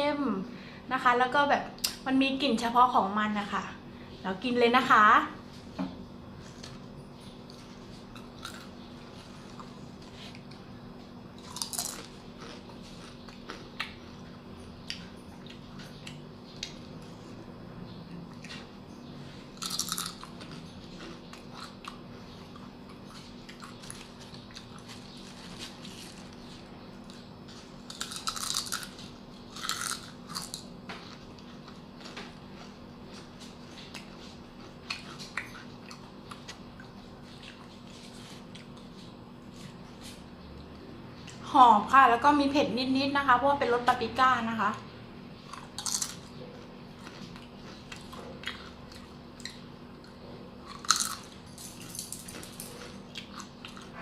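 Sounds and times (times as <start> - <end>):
crunchy chips being chewed: 6.4 - 10.6, 11.3 - 17.2, 19.4 - 40.2, 45.4 - 54.0.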